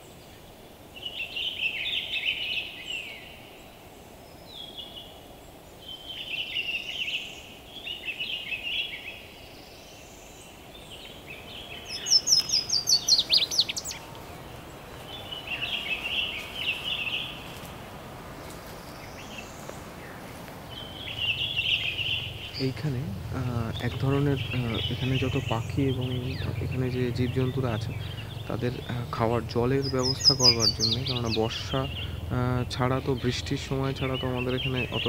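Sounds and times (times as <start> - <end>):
bird repeating song phrase: 0.0 - 3.6, 5.8 - 35.0.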